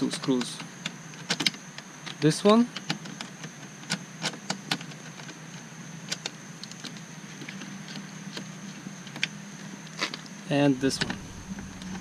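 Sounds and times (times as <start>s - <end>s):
steady low hum: 10.5s - 12.0s.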